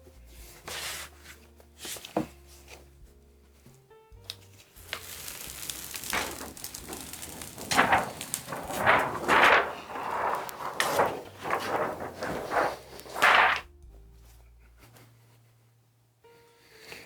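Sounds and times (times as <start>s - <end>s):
paper rustling and crinkling: 0.6s - 2.8s, 4.3s - 13.7s.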